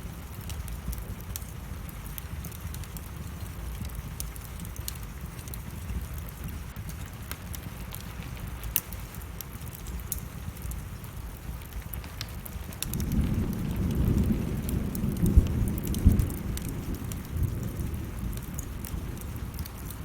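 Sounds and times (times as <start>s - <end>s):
burning wood crackling: 0.0s - 20.0s
steady rain: 0.0s - 20.0s
thunder rolling and cracking: 12.7s - 20.0s.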